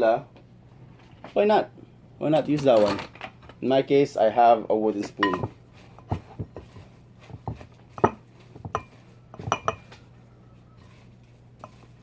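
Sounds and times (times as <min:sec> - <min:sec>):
wooden spoon knocking on bowl: 0:05.2 - 0:10.1.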